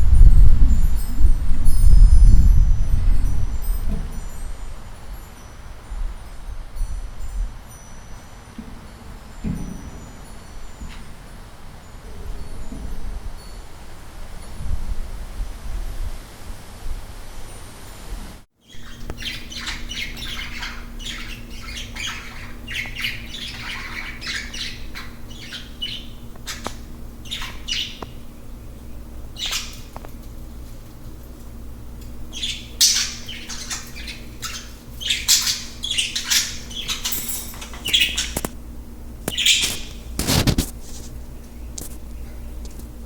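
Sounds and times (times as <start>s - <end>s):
low hum: 0.0s - 17.4s
birds calling: 18.6s - 42.9s.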